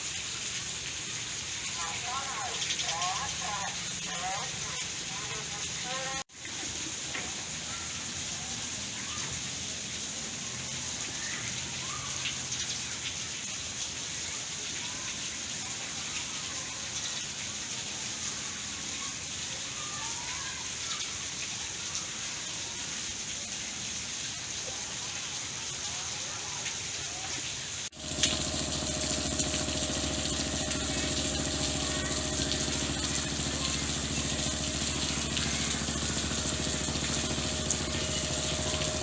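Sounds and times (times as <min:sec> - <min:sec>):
steady rain falling: 0:19.0 - 0:39.0.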